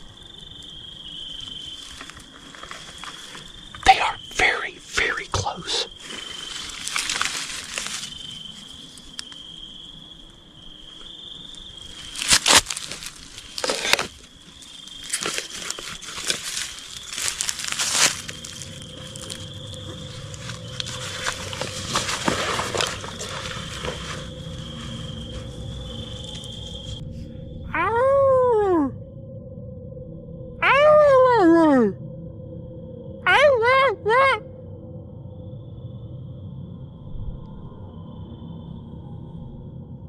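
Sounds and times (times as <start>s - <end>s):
high-pitched insect drone: 0.0s - 39.9s
rustling of leaves or clothing: 0.4s - 3.8s, 5.0s - 27.0s.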